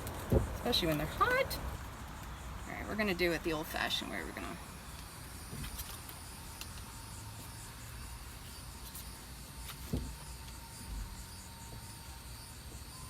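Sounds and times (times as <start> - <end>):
crickets chirping: 0.0 - 13.0
thump: 0.3 - 0.6, 9.9 - 10.2.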